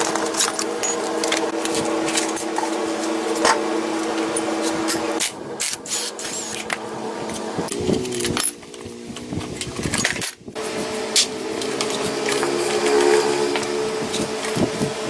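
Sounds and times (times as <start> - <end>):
small motor whirring: 11.6 - 15.0.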